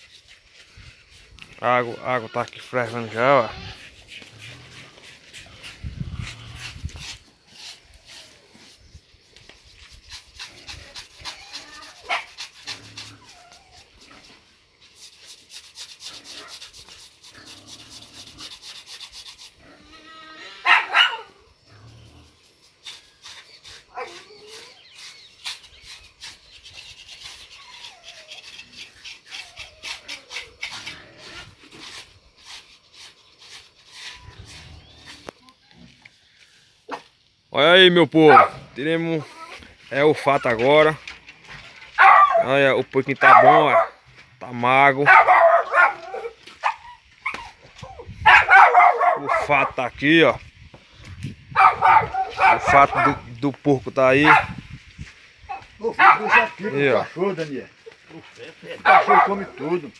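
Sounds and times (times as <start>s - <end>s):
scraping strokes: 0.0s - 20.6s, 21.7s - 35.4s
dog whining: 13.1s - 14.0s, 23.9s - 24.8s, 27.4s - 28.6s, 45.1s - 49.5s, 51.6s - 53.2s
dog whimpering: 13.2s - 13.9s, 27.5s - 28.6s.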